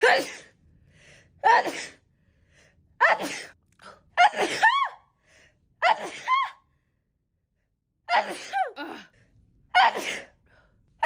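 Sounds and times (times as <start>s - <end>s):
faint in-breaths: 0.6s - 1.4s, 2.0s - 2.9s, 10.4s - 11.0s.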